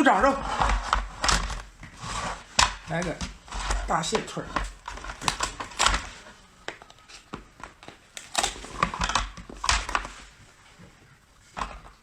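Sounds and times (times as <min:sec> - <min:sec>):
crab shell cracking and crunching: 0:04.8 - 0:06.1, 0:08.1 - 0:10.1.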